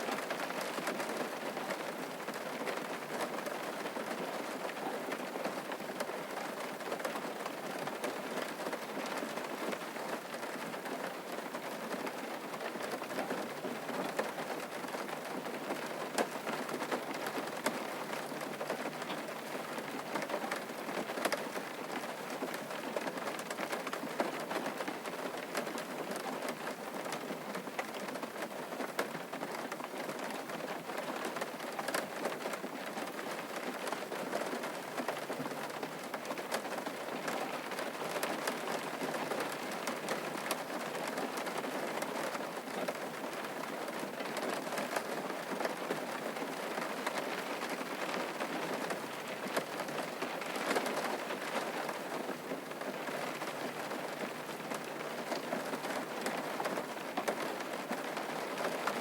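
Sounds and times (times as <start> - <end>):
rain falling: 0.0 - 59.0
raindrops pattering: 0.0 - 59.0.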